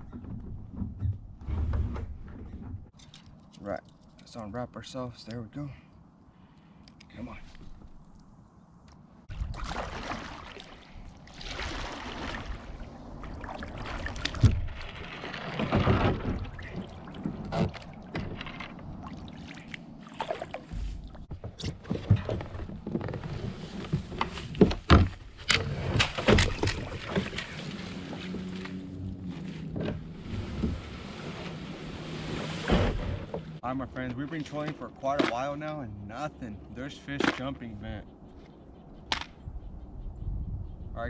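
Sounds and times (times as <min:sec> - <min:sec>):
paddle strokes splashing in water: 0:09.3 - 0:21.3, 0:25.7 - 0:33.6.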